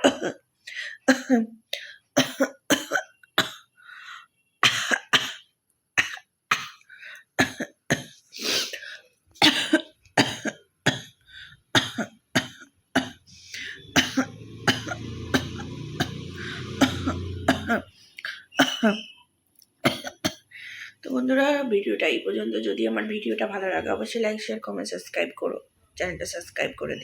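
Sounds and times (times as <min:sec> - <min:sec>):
woman coughing: 0:00.0 - 0:00.4, 0:01.0 - 0:01.5, 0:02.2 - 0:03.7, 0:04.6 - 0:05.4, 0:07.4 - 0:08.2, 0:09.4 - 0:11.2, 0:11.8 - 0:17.9, 0:18.5 - 0:19.1, 0:19.8 - 0:20.5
rough noise with low hum: 0:13.2 - 0:17.9.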